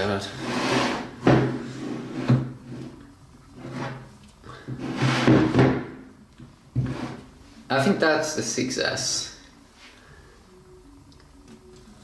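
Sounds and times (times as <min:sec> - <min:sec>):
hard objects knocking and scraping: 0:00.4 - 0:03.0, 0:03.6 - 0:06.1.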